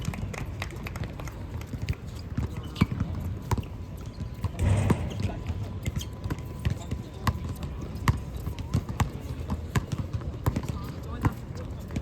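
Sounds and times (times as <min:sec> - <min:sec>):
shoes on basketball court: 0:01.7 - 0:06.1, 0:06.8 - 0:12.0
basketball bouncing: 0:04.6 - 0:05.9.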